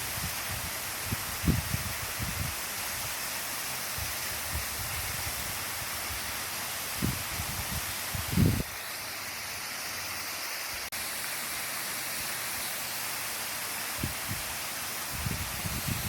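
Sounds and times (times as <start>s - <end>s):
wind buffeting the microphone: 0.0s - 3.1s, 4.0s - 6.3s, 7.0s - 8.7s, 14.0s - 14.5s, 15.1s - 16.0s
waterfall rushing: 0.0s - 16.0s.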